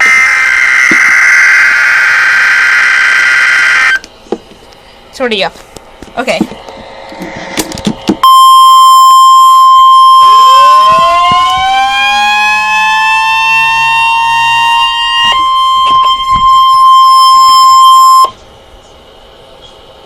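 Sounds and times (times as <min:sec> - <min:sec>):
high-pitched warning alarm beep: 0:08.2 - 0:18.4.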